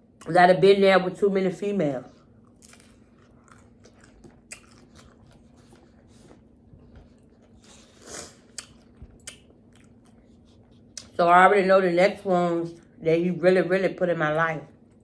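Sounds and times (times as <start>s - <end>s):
chewing and crunching: 2.1s - 11.2s.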